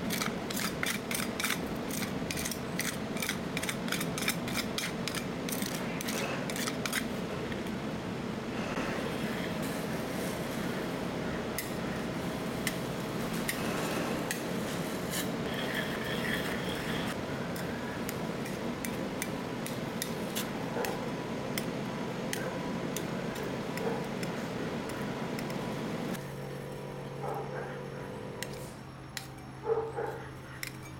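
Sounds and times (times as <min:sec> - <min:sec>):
steady background noise: 0:00.0 - 0:30.9
metal spatulas scraping steel plate: 0:15.0 - 0:17.2.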